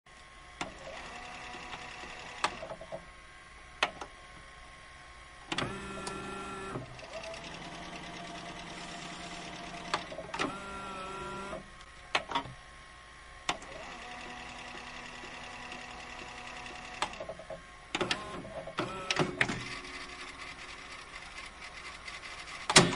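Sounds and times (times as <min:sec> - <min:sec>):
tape mechanism clicking and clunking: 0:22.6 - 0:22.9.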